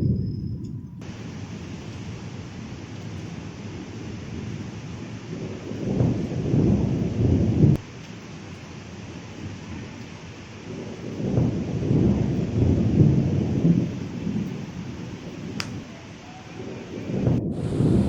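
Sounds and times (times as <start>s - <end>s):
thunder rumbling: 0.0s - 18.0s
heavy rain: 1.0s - 18.0s
sharp tick: 15.6s - 15.8s.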